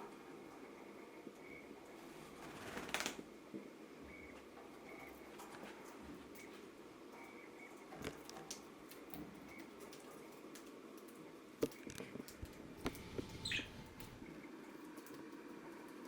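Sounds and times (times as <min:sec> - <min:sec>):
budgerigar chirp: 0:13.3 - 0:13.9.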